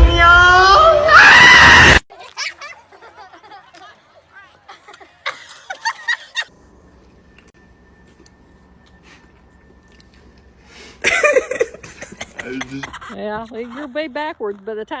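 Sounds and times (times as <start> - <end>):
high-pitched snickering laughter: 2.1 - 6.5, 11.0 - 14.0.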